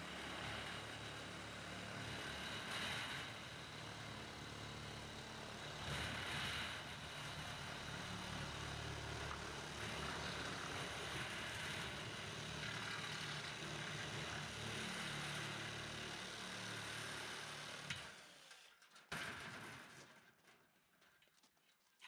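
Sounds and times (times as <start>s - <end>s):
small motor running with low hum: 0.0s - 18.8s.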